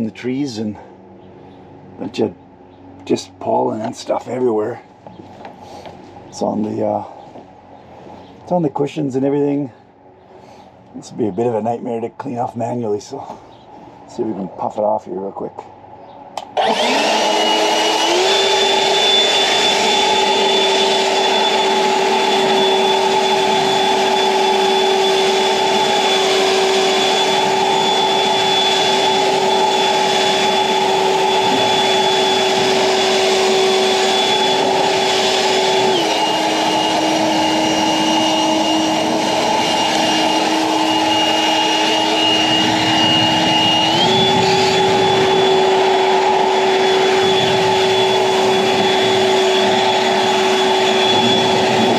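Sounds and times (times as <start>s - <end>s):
leaf blower running: 16.4s - 51.9s.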